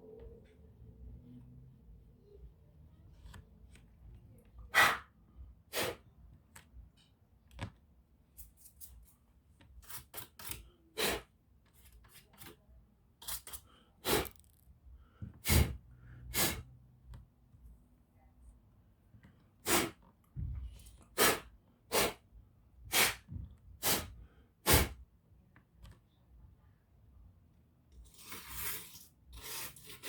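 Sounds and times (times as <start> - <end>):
sharp scraping sounds: 28.0 - 30.0.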